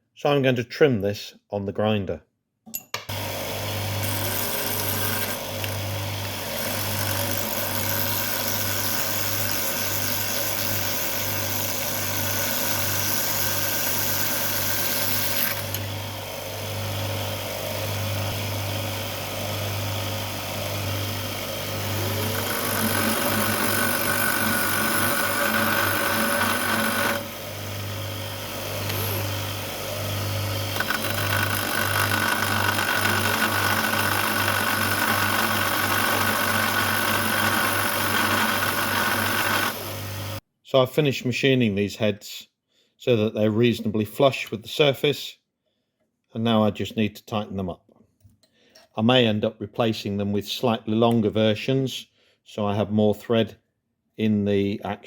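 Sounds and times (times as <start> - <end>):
electric grinder motor hum: 3.1 - 40.4.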